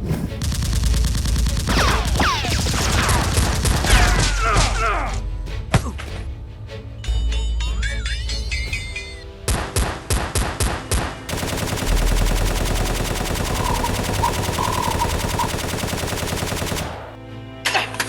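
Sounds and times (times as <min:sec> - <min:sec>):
automatic gunfire burst: 0:00.4 - 0:03.9, 0:11.3 - 0:17.2
single gunshots: 0:09.5 - 0:17.2.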